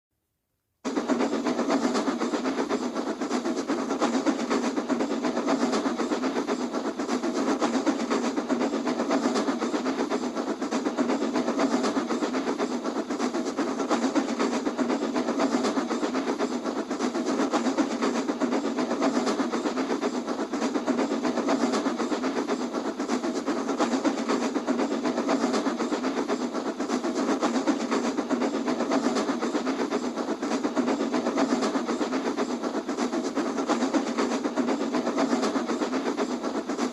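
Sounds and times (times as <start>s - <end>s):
steady clattering with faint tone: 0.8s - 36.9s.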